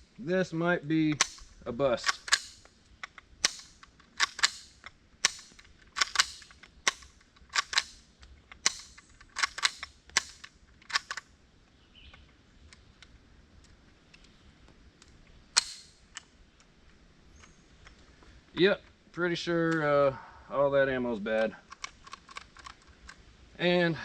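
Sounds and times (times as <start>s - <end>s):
rifle shots cracking: 1.1s - 2.7s, 3.4s - 11.2s, 15.6s - 16.1s
faint clicks: 1.2s - 19.9s.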